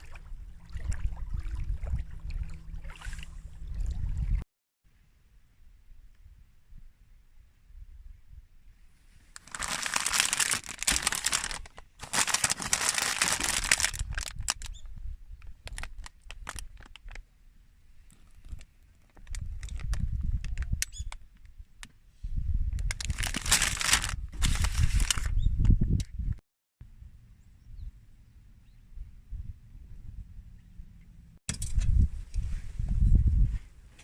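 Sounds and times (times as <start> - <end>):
rustling and crinkling handling noise: 9.3 - 14.7, 15.4 - 17.2, 18.0 - 20.6, 22.8 - 25.4.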